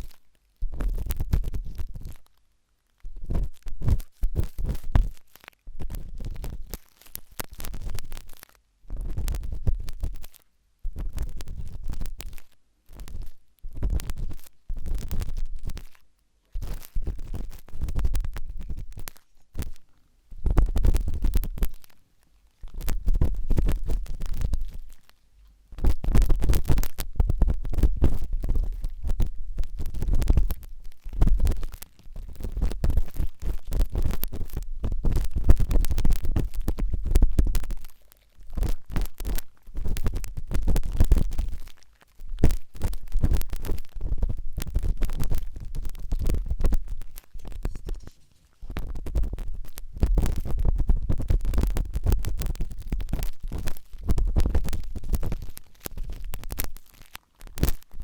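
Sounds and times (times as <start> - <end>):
toothpick scratching inside ear: 25.8 - 58.0.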